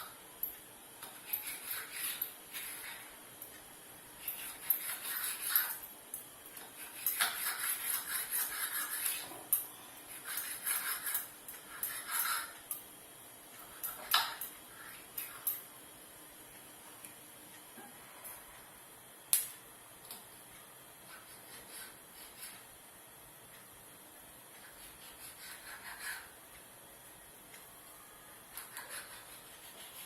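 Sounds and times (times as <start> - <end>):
utensils scraping dough: 1.0 - 3.2, 4.2 - 5.9, 6.6 - 12.7, 21.0 - 22.7, 24.6 - 26.4, 28.5 - 30.0.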